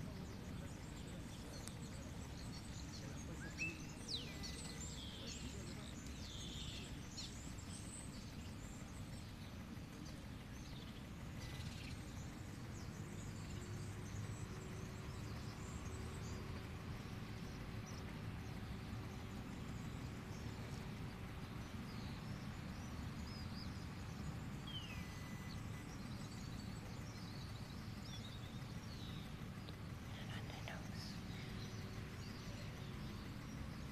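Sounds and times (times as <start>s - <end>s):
bird chirps and twittering: 0.0s - 33.9s
low background rumble: 0.0s - 33.9s.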